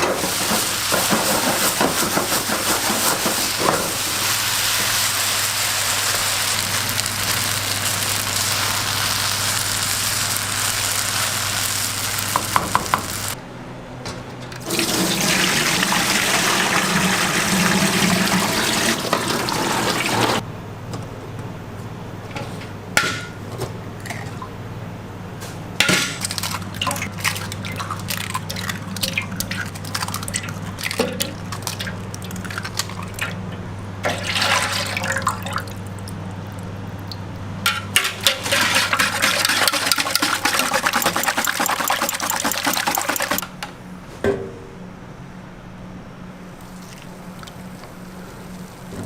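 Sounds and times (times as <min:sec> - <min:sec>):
utensils and pans clinking: 0:37.7 - 0:43.5
steady low hum: 0:43.0 - 0:49.0.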